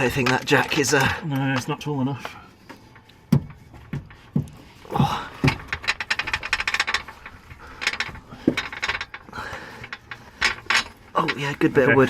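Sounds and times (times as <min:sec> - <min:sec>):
dull knocks: 0:03.3 - 0:06.3.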